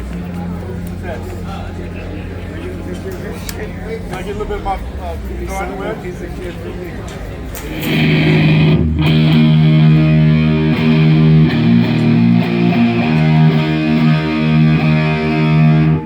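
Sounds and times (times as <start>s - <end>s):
distorted electric guitar: 7.6s - 16.0s.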